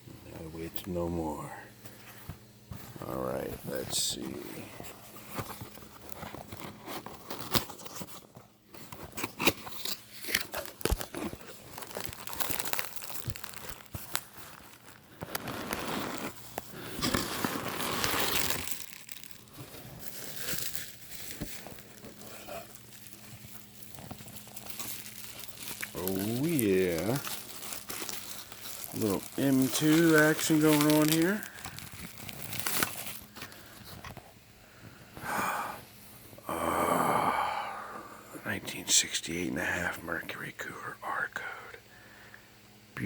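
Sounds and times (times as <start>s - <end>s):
wrapping paper tearing and crinkling: 4.1s - 34.2s.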